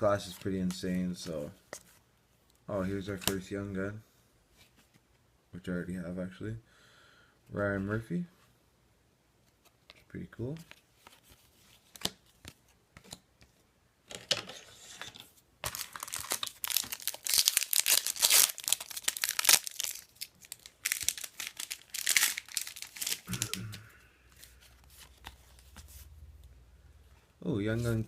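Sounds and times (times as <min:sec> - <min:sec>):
card pack wrapper tearing and crinkling: 0:15.6 - 0:23.8.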